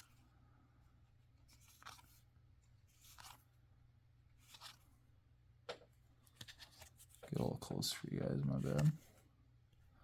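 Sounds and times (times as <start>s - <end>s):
cards sliding against each other: 1.2s - 3.5s, 4.3s - 5.0s, 6.2s - 7.3s.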